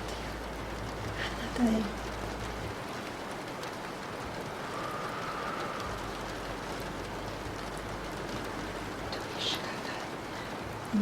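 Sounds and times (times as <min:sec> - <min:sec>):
faint rain drop ticks: 0:00.0 - 0:11.0
steady rain patter: 0:00.0 - 0:11.0.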